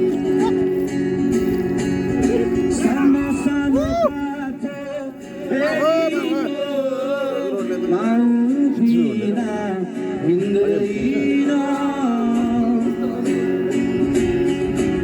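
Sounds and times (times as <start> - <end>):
voices singing: 2.2 - 13.7.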